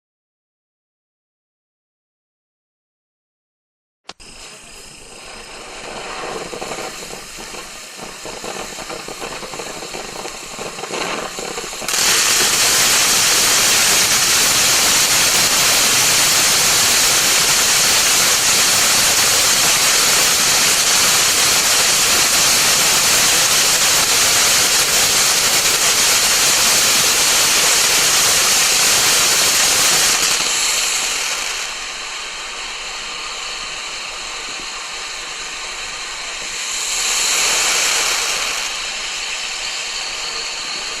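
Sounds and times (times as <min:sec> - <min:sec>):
crackling: 0:04.1 - 0:31.9
firework fountain hissing: 0:04.1 - 0:41.0.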